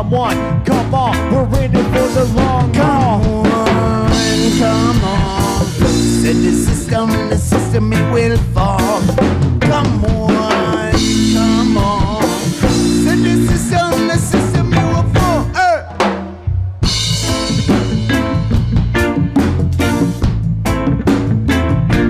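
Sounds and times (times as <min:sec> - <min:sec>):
reggae band playing: 0:00.0 - 0:22.0
pitch-bending lead melody: 0:02.8 - 0:07.8, 0:10.7 - 0:20.4.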